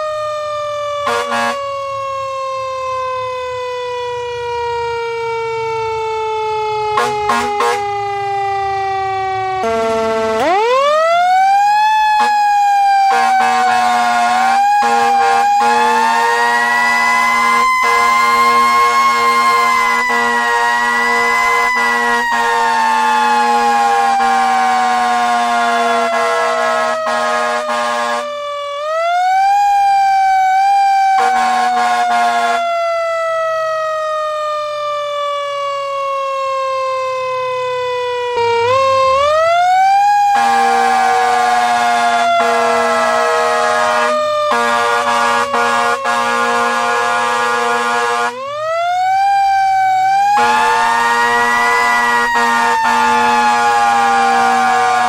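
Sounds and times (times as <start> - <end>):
siren wailing: 0.0 - 55.0
low air horn blast: 1.0 - 1.8, 6.9 - 8.2, 9.6 - 10.5, 12.1 - 28.4, 31.1 - 32.8, 40.3 - 48.4, 50.3 - 55.0.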